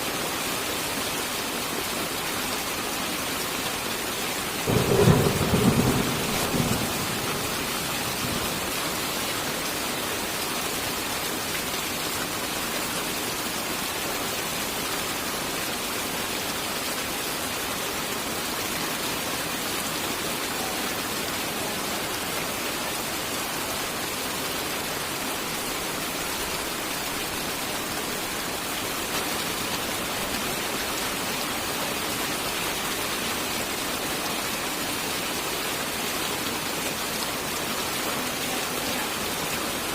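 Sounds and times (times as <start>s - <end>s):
rain falling: 0.0s - 39.9s
thunder rumble: 4.7s - 8.8s.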